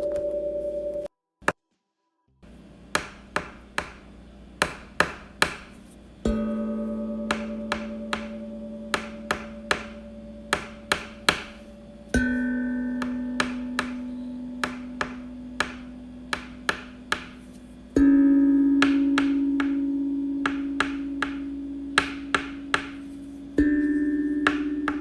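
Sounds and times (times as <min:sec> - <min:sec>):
low ringing notes: 0:06.2 - 0:17.2, 0:17.8 - 0:25.0.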